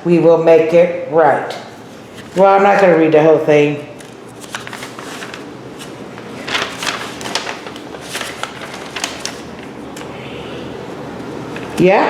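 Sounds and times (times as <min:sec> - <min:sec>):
paper and plastic rustling: 0:01.7 - 0:03.2, 0:03.8 - 0:11.9.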